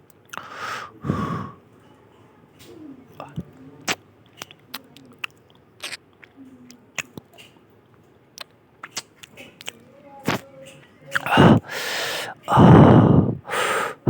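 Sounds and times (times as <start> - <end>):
wet mouth clicks: 0.1 - 0.5, 3.2 - 7.5, 8.4 - 10.4, 11.1 - 11.7
loud breath: 0.4 - 1.6, 11.3 - 14.0
person chewing food: 3.1 - 7.6, 8.3 - 10.4.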